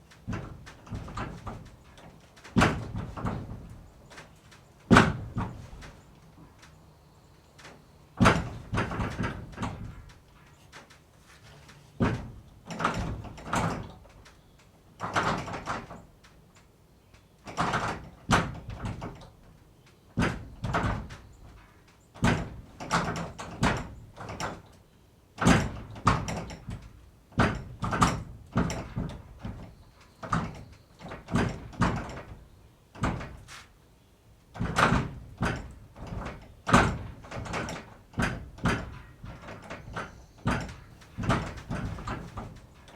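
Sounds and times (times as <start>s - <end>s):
wooden door knocking and rattling: 0.2s - 4.3s, 4.9s - 6.0s, 8.2s - 10.2s, 12.0s - 14.3s, 15.0s - 16.0s, 17.5s - 19.6s, 20.2s - 24.7s, 25.4s - 33.5s, 34.5s - 42.9s.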